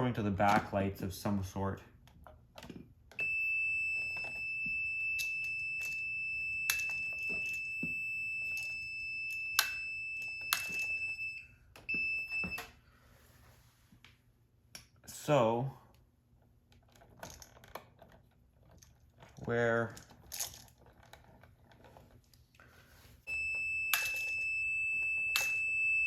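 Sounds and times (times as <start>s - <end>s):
voltage tester high-pitched tone: 3.2s - 12.7s
wires clicking and rustling: 15.9s - 22.7s.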